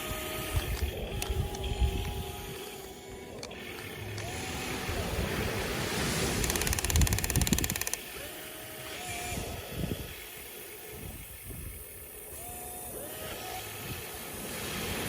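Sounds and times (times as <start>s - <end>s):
wind buffeting microphone: 0.0s - 8.0s
small electric motor whirring: 0.0s - 9.5s.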